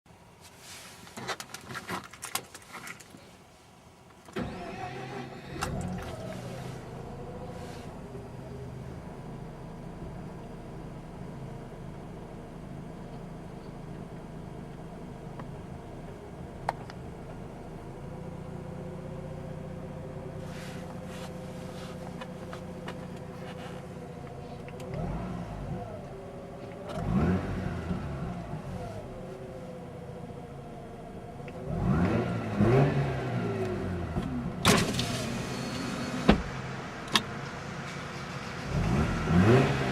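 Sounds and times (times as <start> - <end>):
rotary engine starting and idling: 4.3 - 9.3, 31.4 - 39.9
car engine idling: 4.4 - 32.6, 33.2 - 39.3.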